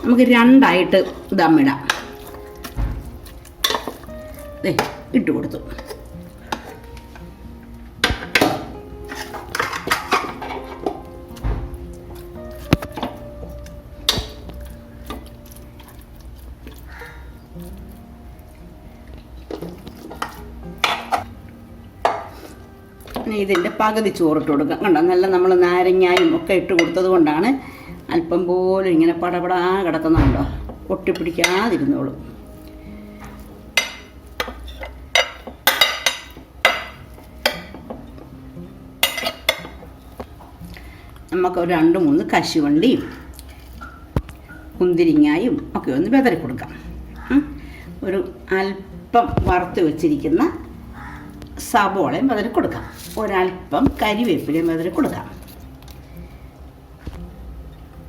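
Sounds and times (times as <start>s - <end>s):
faint background music: 0.0s - 58.0s.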